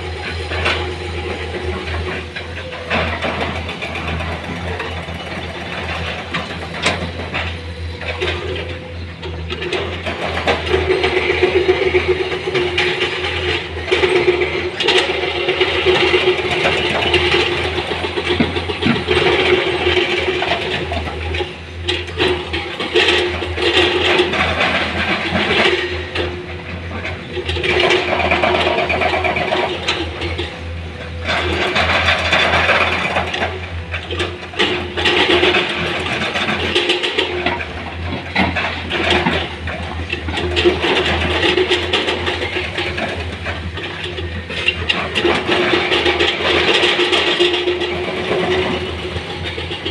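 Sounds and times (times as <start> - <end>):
diesel engine running under load: 0.0 - 49.9.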